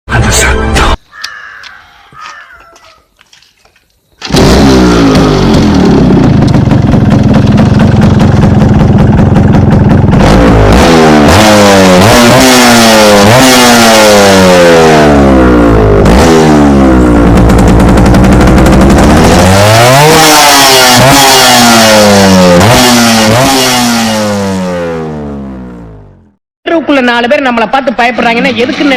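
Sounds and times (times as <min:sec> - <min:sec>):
two-stroke motorcycle accelerating: 0:04.2 - 0:26.4.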